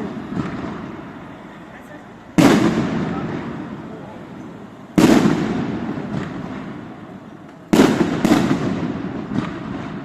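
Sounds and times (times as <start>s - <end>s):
fireworks bursting: 0.0s - 10.0s.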